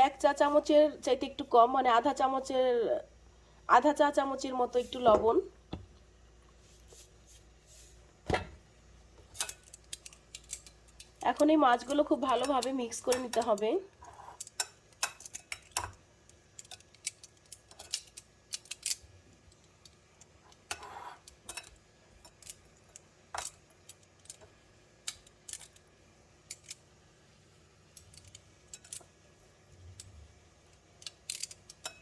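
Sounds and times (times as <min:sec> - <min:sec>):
soft rustle: 0:06.4 - 0:08.1.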